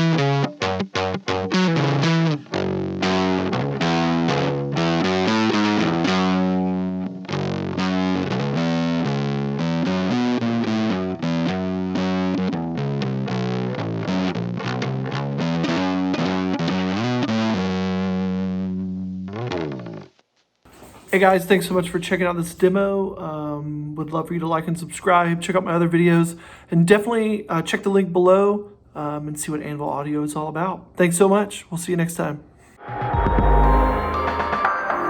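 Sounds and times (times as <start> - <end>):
distorted fuzz bass notes: 0.0 - 20.2.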